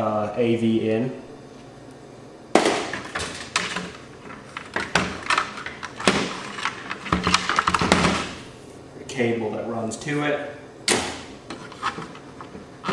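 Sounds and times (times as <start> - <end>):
plastic and metal parts rattling: 2.9 - 8.2.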